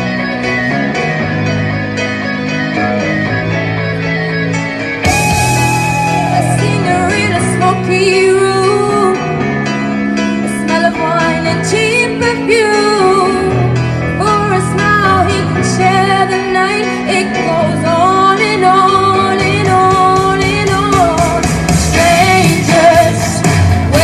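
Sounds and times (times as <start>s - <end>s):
guitar: 0.0s - 24.0s
woman singing rock song: 4.4s - 9.4s, 10.4s - 24.0s.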